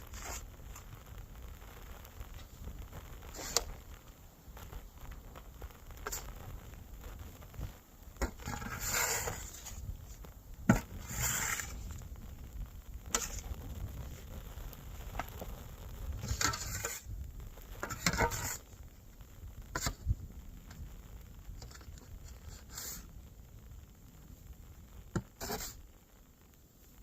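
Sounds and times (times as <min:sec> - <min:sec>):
wind rumble on microphone: 0:00.0 - 0:25.2
shovel scooping snow: 0:00.1 - 0:00.5, 0:08.2 - 0:09.8, 0:10.7 - 0:11.8, 0:16.2 - 0:17.1.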